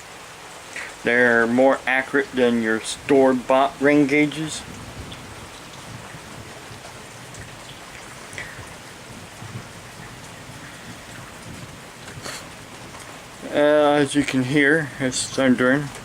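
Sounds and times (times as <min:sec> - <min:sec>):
steady rain falling: 0:00.0 - 0:16.0
thunder rumbling: 0:01.1 - 0:16.0.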